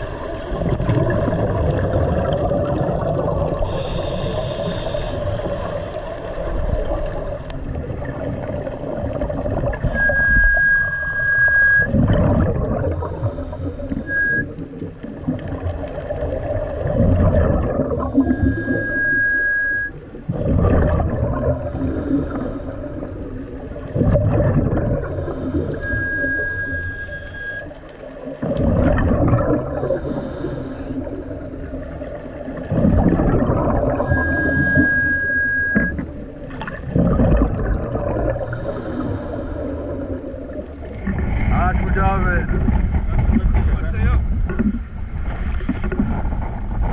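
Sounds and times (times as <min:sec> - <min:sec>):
exhaled bubbles rushing: 0:00.0 - 0:46.9
regulator whistling on inhalation: 0:09.9 - 0:11.9, 0:14.0 - 0:14.5, 0:18.2 - 0:20.0, 0:25.6 - 0:27.7, 0:34.0 - 0:36.0.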